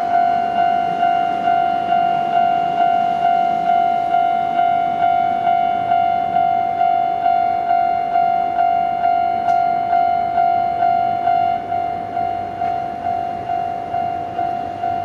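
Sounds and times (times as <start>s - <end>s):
level crossing warning bell: 0.0s - 15.0s.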